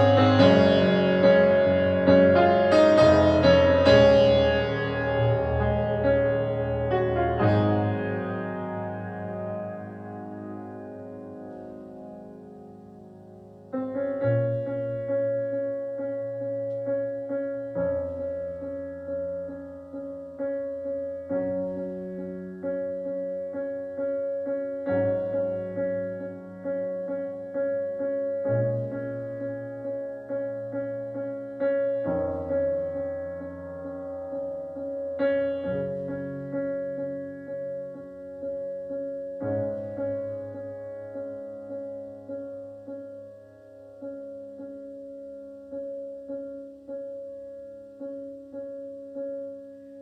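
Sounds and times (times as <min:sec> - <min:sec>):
keyboard playing chords: 0:00.0 - 0:50.0.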